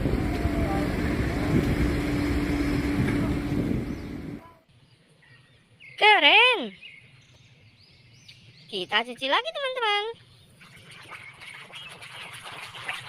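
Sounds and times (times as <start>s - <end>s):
steady low hum: 0.0s - 4.4s
water splashing over a toy: 10.6s - 13.0s.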